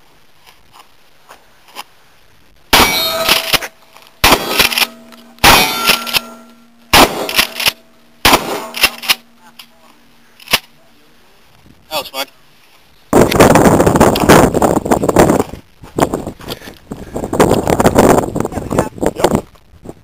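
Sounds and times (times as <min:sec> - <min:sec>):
gunshots: 0:02.7 - 0:09.3
steel target clang: 0:02.7 - 0:09.4
steel plates ringing: 0:02.7 - 0:10.4.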